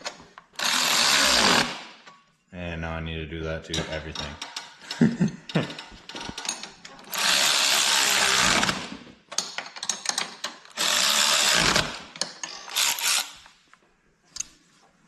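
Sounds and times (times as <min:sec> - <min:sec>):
power tool running: 0:00.6 - 0:01.8, 0:07.1 - 0:08.9, 0:10.8 - 0:12.0
tools clicking and clinking: 0:03.7 - 0:07.3, 0:09.3 - 0:10.8, 0:12.1 - 0:13.5.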